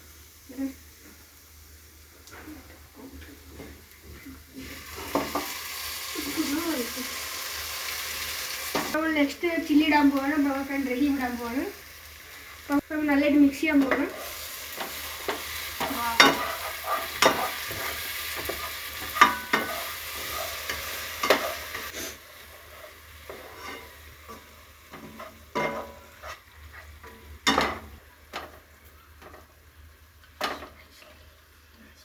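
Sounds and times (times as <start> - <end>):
masala sizzling in a pan: 0.0 - 31.8
spoon scraping and knocking pan: 3.0 - 5.6, 13.8 - 21.9, 22.5 - 29.5.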